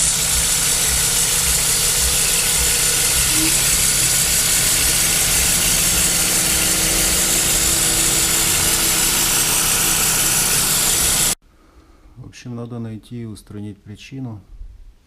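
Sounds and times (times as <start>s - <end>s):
car engine idling: 0.0s - 11.4s
drive belt squeaking: 0.0s - 11.4s.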